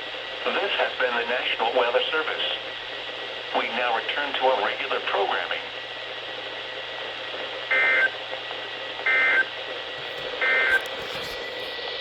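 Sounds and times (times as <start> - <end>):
radio hiss: 0.4 - 5.8, 10.0 - 11.9.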